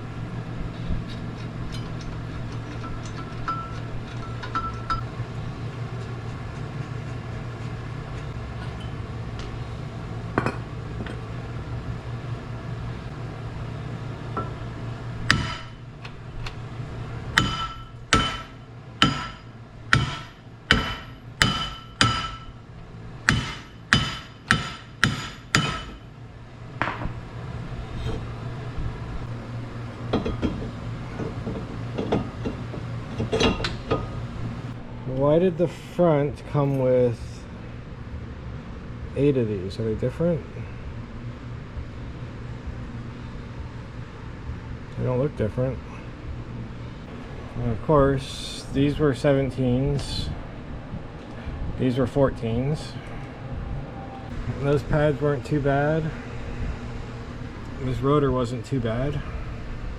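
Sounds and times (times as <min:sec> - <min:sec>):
steady low hum: 0:00.0 - 0:59.9
hammer striking metal: 0:15.3 - 0:15.8, 0:17.4 - 0:22.6, 0:23.2 - 0:26.1.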